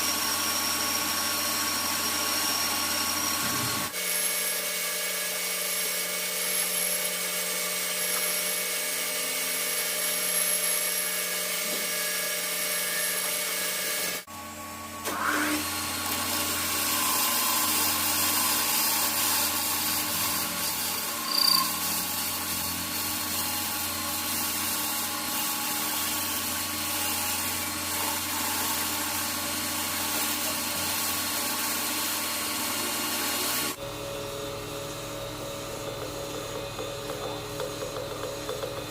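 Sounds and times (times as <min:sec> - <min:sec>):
metal lathe whine: 0:00.0 - 0:38.9.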